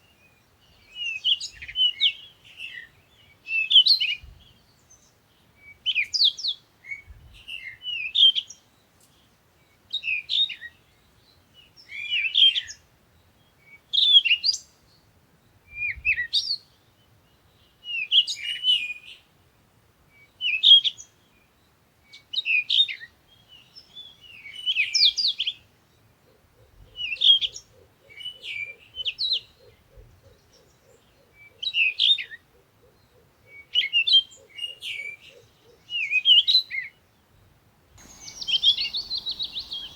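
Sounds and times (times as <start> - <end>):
songbird chirping: 38.0 - 39.9.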